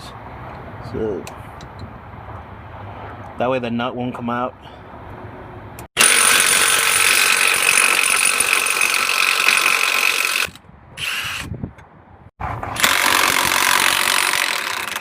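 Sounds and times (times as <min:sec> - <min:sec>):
power tool whining: 0:12.8 - 0:15.0.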